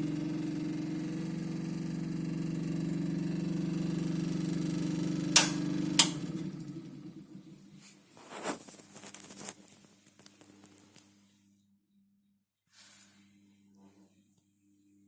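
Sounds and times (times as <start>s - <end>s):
fan heater humming: 0.0s - 9.5s
switch clicks: 5.4s - 6.3s.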